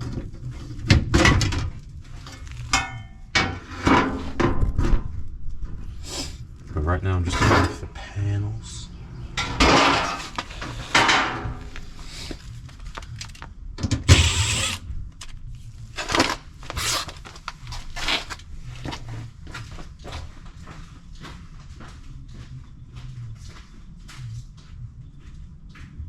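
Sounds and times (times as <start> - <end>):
metal clanks and scrapes: 0.0 - 5.0, 7.2 - 8.0, 9.3 - 12.4.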